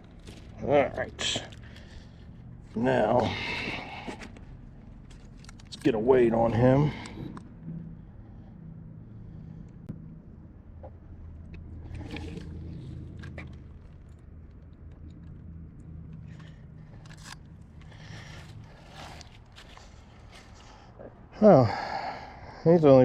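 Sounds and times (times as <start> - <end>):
handling noises scraping and clicking: 0.0 - 7.8, 10.8 - 21.0
steady low hum: 0.0 - 23.0.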